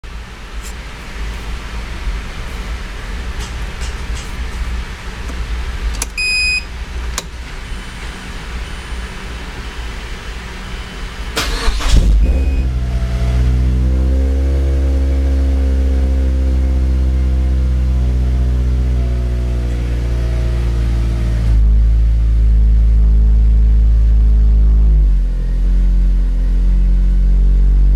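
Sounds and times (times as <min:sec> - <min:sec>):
short electronic beep: 0:12.2 - 0:12.7.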